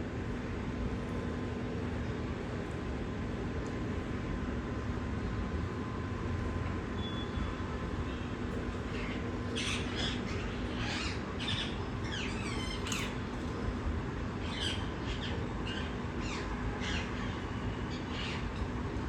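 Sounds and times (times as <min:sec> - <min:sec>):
parrots squawking: 0:09.0 - 0:13.1.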